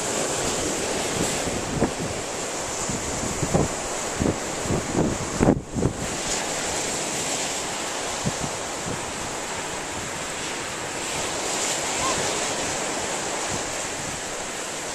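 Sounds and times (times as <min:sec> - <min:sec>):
ocean surf rushing: 0:00.0 - 0:14.9
wind on microphone: 0:00.0 - 0:14.9.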